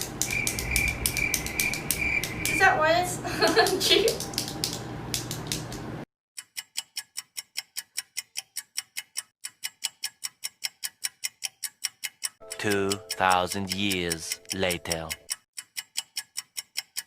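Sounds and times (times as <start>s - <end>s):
clock ticking: 0.0s - 2.7s, 6.4s - 17.0s.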